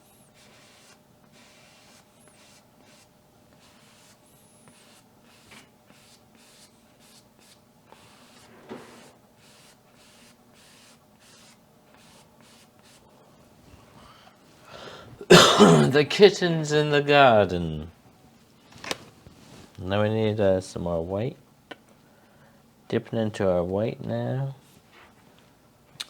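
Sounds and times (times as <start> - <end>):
paintbrush scrubbing canvas: 0.0 - 13.2.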